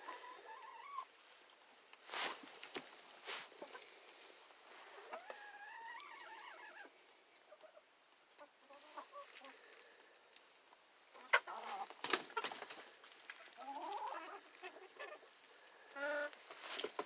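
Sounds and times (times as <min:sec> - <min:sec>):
hens clucking: 0:00.0 - 0:01.1, 0:03.3 - 0:04.0, 0:04.9 - 0:09.6, 0:11.1 - 0:17.0.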